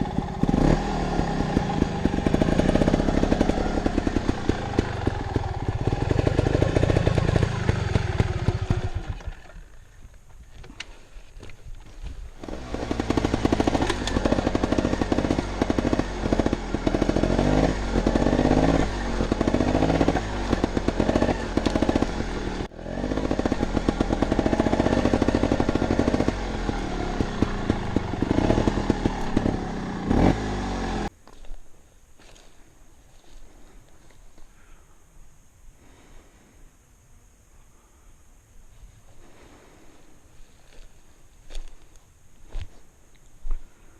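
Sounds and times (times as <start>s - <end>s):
motorcycle engine revving: 0.0s - 9.7s, 12.4s - 31.1s.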